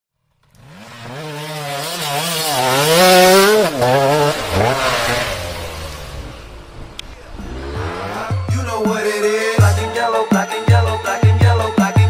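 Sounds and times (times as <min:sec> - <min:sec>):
motorcycle engine revving: 0:00.2 - 0:09.2.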